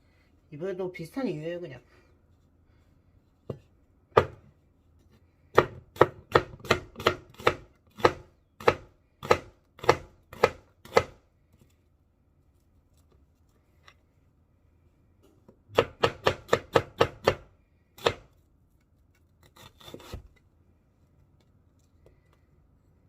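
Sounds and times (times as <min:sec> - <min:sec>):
knife chopping onion on board: 0:03.5 - 0:04.5, 0:05.5 - 0:11.2, 0:15.7 - 0:18.3.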